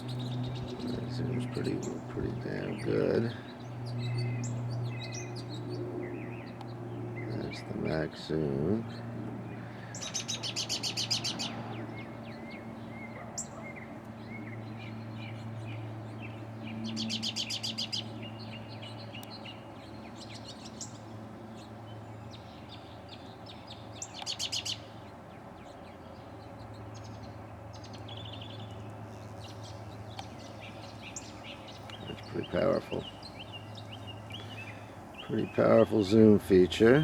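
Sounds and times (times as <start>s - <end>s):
steady low hum: 0.0s - 37.0s
soft bird chirps: 8.6s - 37.0s
songbird buzzy trill: 21.8s - 37.0s.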